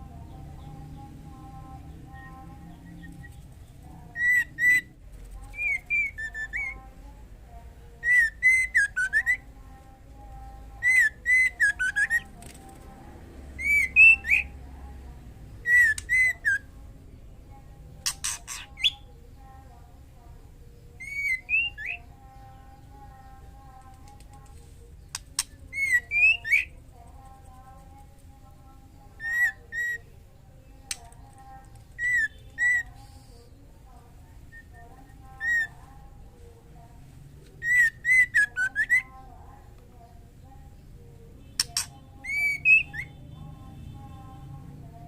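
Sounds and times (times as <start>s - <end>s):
sharp bird clicks: 15.7s - 16.6s, 18.0s - 19.0s, 23.9s - 26.7s, 30.8s - 33.2s, 41.5s - 43.1s.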